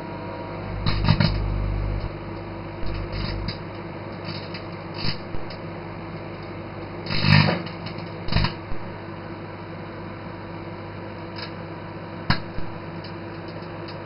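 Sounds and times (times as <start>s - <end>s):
microwave oven humming: 0.0s - 14.0s
crackling electrical arcing: 0.7s - 5.7s, 7.0s - 8.9s.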